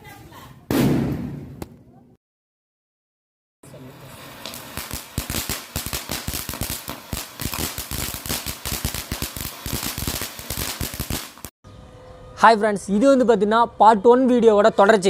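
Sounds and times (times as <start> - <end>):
firecrackers banging: 3.7 - 11.5.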